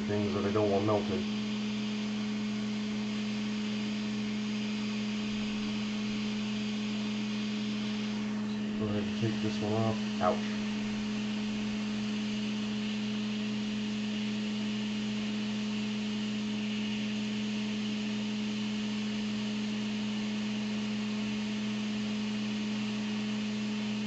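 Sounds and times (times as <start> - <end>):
hot air blower hum with hiss: 0.0 - 24.0.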